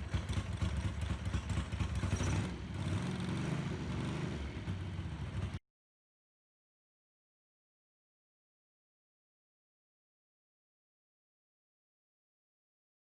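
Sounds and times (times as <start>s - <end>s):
motorcycle engine running: 0.0s - 5.6s.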